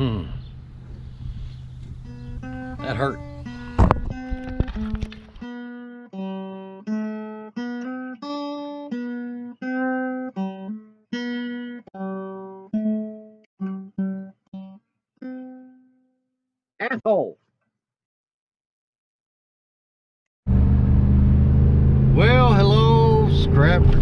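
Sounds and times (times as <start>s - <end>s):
plucked acoustic guitar melody: 0.0s - 16.0s.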